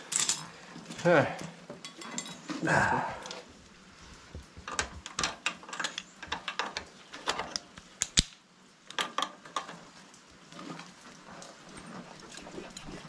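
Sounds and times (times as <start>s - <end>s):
hand tools clinking on metal: 0.0s - 3.4s, 4.6s - 7.6s.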